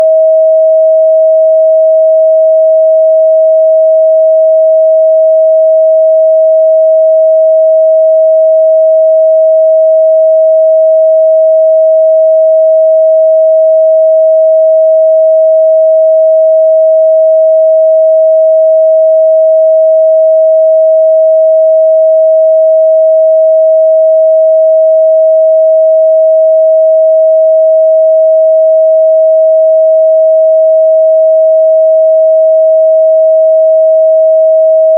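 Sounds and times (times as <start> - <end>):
sine-wave test tone: 0.0 - 34.9.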